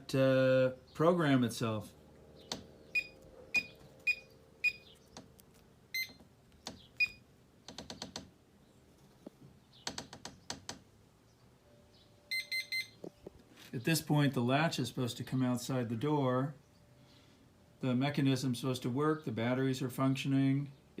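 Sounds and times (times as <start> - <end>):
short electronic beep: 12.3 - 13.0.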